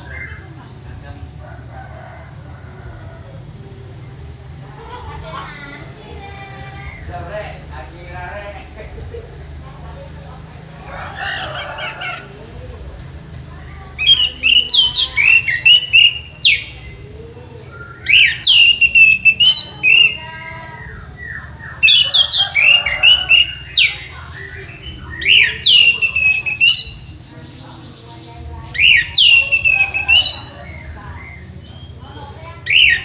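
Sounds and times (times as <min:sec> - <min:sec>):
thrush singing whistled phrases: 0:14.0 - 0:17.0, 0:17.6 - 0:27.3, 0:28.6 - 0:32.0, 0:32.6 - 0:33.0.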